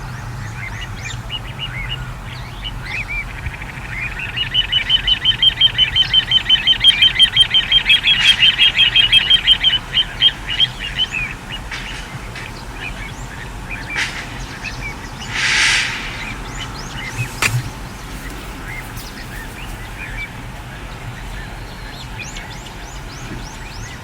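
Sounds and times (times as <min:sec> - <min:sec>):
faint bird chirps: 0:00.0 - 0:24.0
short hissing rush: 0:14.0 - 0:19.9.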